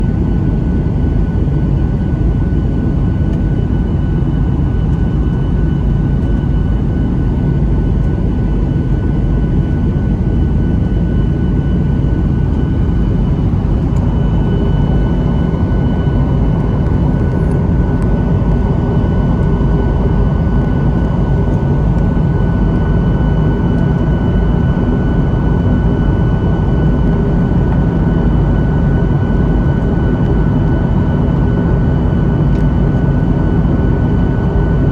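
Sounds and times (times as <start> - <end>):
jet engine drone in cabin: 0.0 - 34.9
thin constant whine: 11.3 - 32.8.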